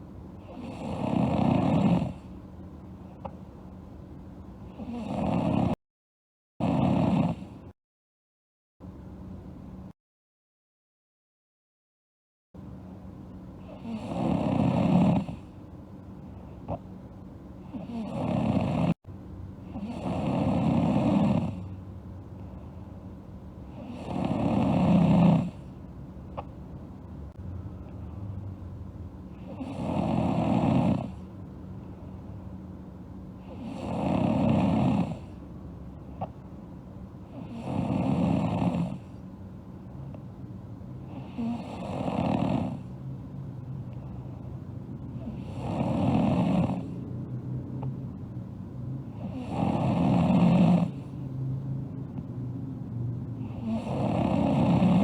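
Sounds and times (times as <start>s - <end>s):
girl snoring: 0.4s - 2.3s, 4.7s - 5.8s, 6.6s - 7.6s, 13.6s - 15.4s, 17.7s - 19.0s, 19.7s - 21.7s, 23.7s - 25.6s, 29.4s - 31.2s, 33.4s - 35.4s, 37.3s - 39.1s, 41.1s - 42.9s, 45.2s - 47.0s, 49.1s - 51.1s, 53.4s - 55.0s.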